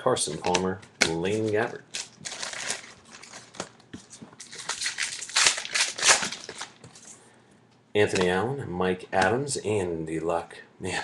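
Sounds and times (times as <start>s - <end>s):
cards rustling: 0.2s - 7.2s
foil wrapper crinkling: 0.5s - 7.2s.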